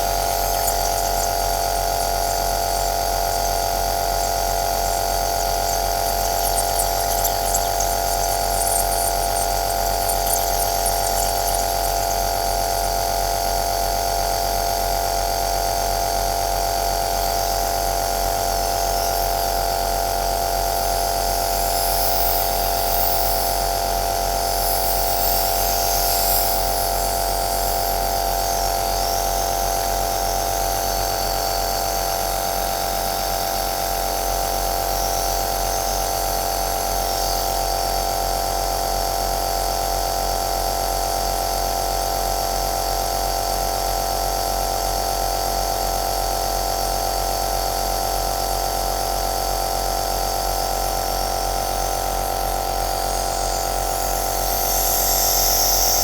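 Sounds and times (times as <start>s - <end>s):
nebulizer motor drone: 0.0s - 13.6s.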